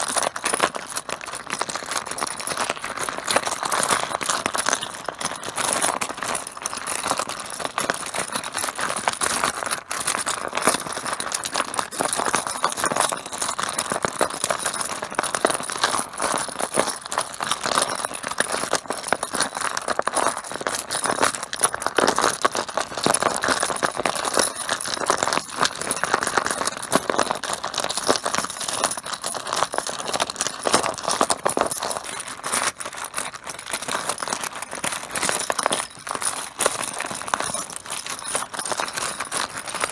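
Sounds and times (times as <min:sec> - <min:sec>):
mahjong tiles clattering: 0:20.3 - 0:29.8.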